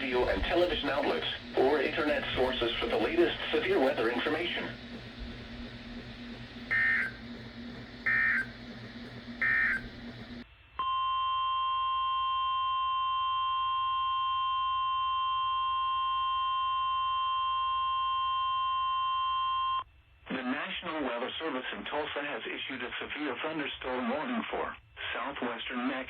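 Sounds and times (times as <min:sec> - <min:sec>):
digital data bursts: 0:00.0 - 0:04.8, 0:06.6 - 0:07.3, 0:08.0 - 0:08.6, 0:09.3 - 0:10.2
radio static: 0:00.0 - 0:10.4
steady weather radio alert tone: 0:00.0 - 0:10.4.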